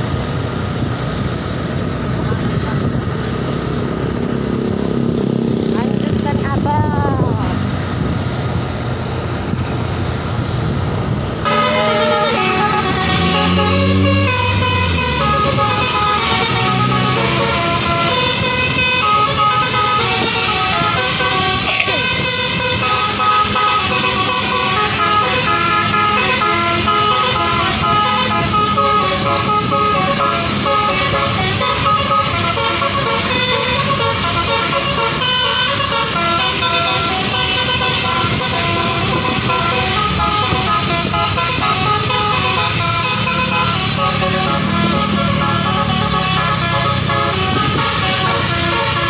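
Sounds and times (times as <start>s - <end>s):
multi-tone bus horn melody: 11.4s - 49.0s.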